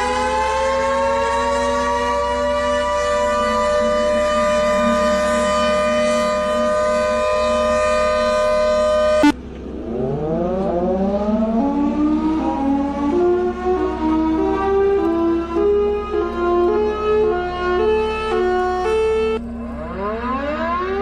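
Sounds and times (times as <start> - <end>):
multi-toned warning siren wail: 0.0 - 21.0
siren winding up: 0.0 - 21.0.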